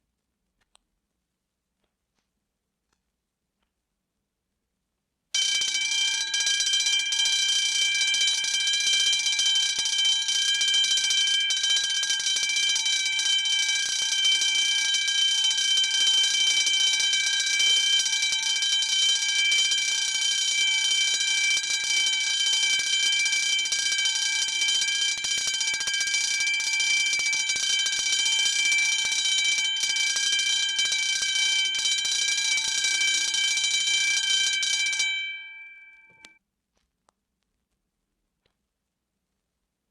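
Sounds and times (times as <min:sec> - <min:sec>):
electric alarm bell ringing: 0:05.4 - 0:36.4.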